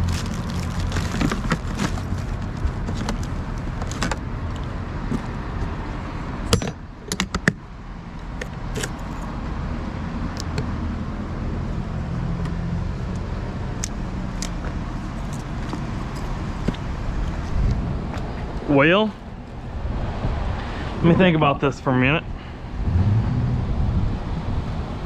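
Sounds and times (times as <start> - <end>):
steady low rumble: 12.8 - 25.0.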